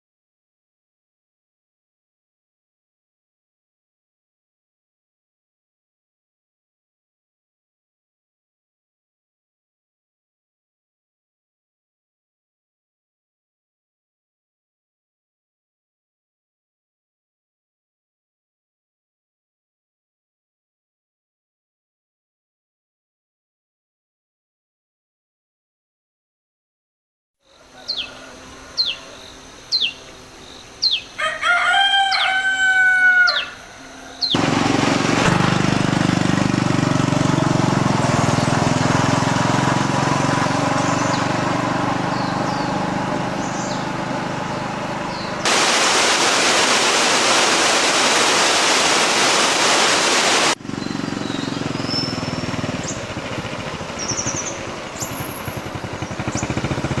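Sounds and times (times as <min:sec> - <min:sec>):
rooster crowing: 0:27.5 - 0:29.4, 0:30.9 - 0:34.4
loud rushing noise: 0:34.4 - 0:36.8, 0:45.5 - 0:50.6.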